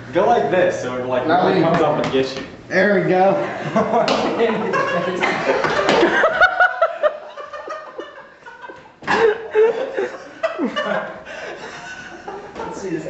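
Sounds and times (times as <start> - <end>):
people laughing hard: 3.4 - 13.0.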